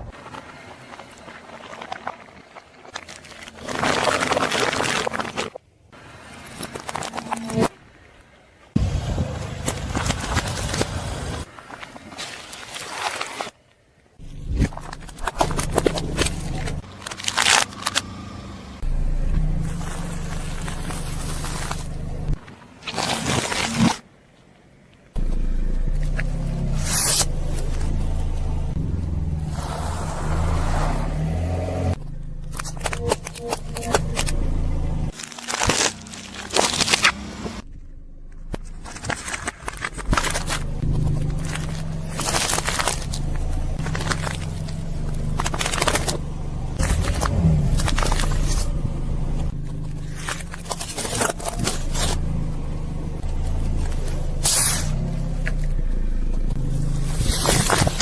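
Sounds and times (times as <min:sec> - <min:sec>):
objects crushed under tyre: 0:02.9 - 0:05.6, 0:32.0 - 0:37.7, 0:38.4 - 0:55.8, 0:56.5 - 0:58.0
car engine running: 0:14.2 - 0:22.4, 0:25.2 - 0:35.2, 0:35.8 - 0:58.0.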